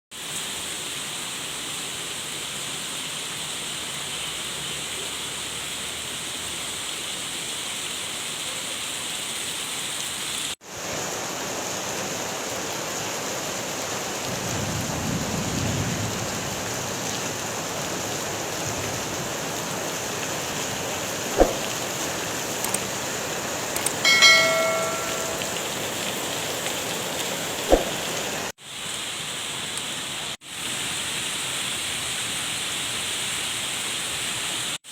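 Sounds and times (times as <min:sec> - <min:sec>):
heavy rain pouring: 0:00.2 - 0:34.9
brief ringing tone: 0:24.1 - 0:25.6
sharp knocks: 0:27.7 - 0:28.0.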